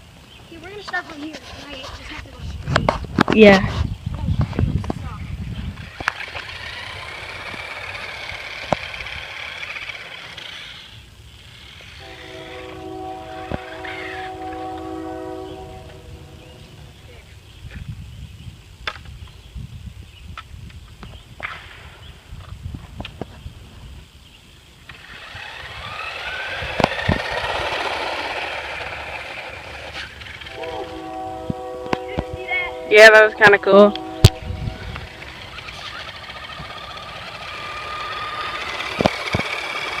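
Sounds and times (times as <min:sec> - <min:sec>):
wheels on gravel: 0:00.0 - 0:18.0, 0:21.5 - 0:40.0
rc truck motor whining: 0:05.6 - 0:16.0, 0:24.8 - 0:32.4, 0:33.9 - 0:40.0.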